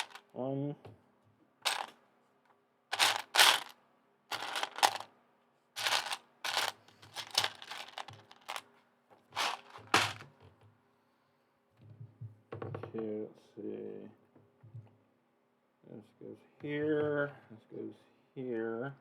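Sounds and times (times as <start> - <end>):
plastic pieces clattering: 0.0 - 0.2, 1.7 - 1.9, 2.9 - 3.7, 4.3 - 5.0, 5.8 - 8.6, 9.4 - 10.2.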